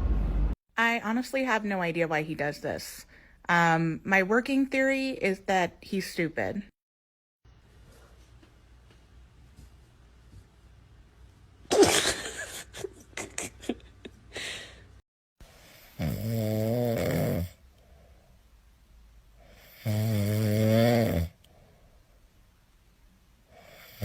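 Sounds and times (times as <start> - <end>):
loud snoring: 15.6 - 17.6, 19.4 - 21.4, 23.6 - 24.0.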